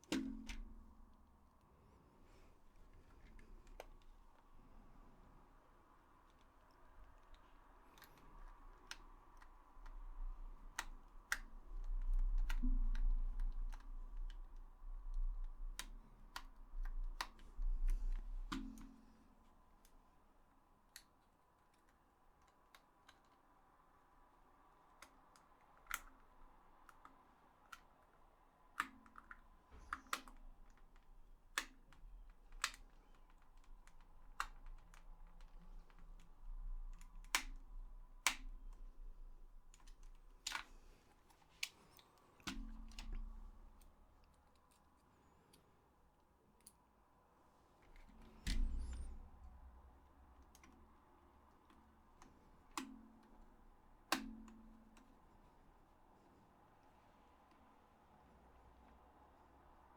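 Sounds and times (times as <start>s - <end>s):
plastic parts clicking and tapping: 0.0s - 1.2s, 6.2s - 20.2s, 20.8s - 23.6s, 24.3s - 45.7s, 47.8s - 55.6s.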